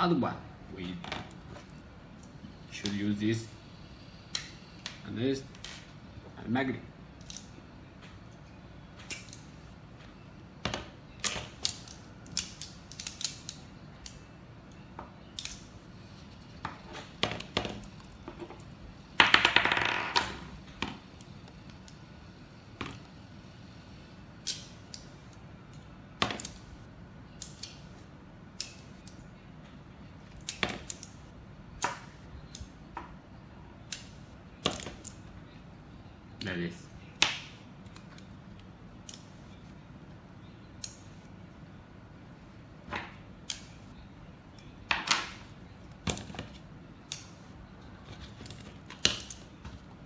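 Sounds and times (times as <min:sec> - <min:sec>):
magnetic pieces clicking together: 0:11.2 - 0:15.7, 0:24.4 - 0:26.7, 0:31.8 - 0:32.8.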